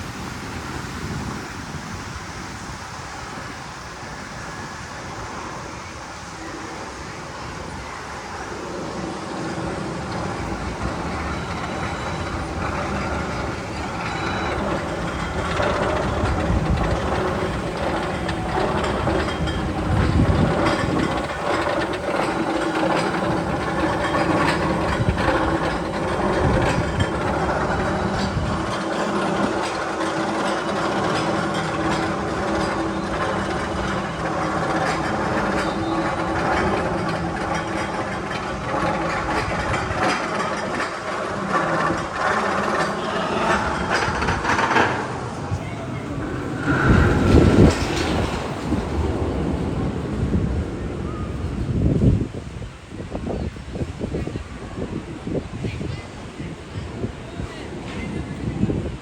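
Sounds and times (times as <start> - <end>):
roller coaster rumbling and clattering: 0.0 - 59.0
rattle of clicks: 9.3 - 50.7.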